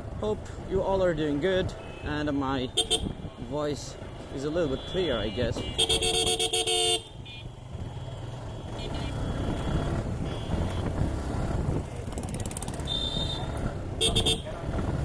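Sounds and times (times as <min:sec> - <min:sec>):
road noise: 0:00.0 - 0:15.0
motorcycle engine rumble: 0:05.6 - 0:15.0.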